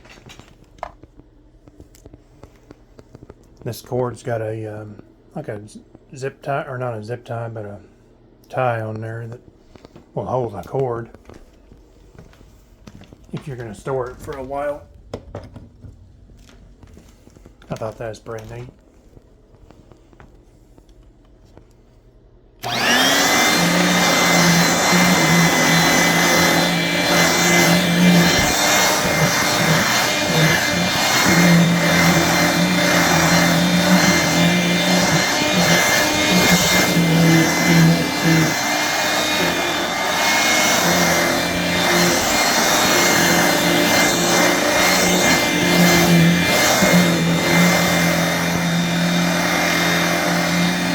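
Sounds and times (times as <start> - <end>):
hand vacuum motor whine: 22.6 - 50.9.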